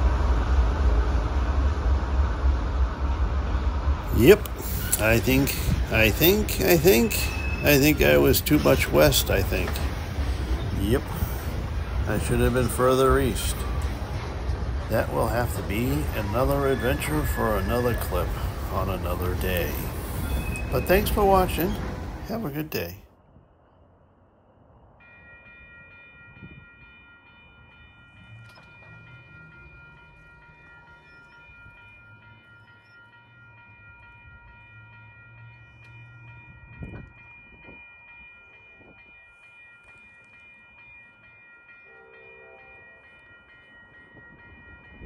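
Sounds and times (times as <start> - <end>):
train rumble: 0.0 - 45.0
train wheels squealing: 4.6 - 9.0, 15.7 - 18.8, 20.0 - 21.6.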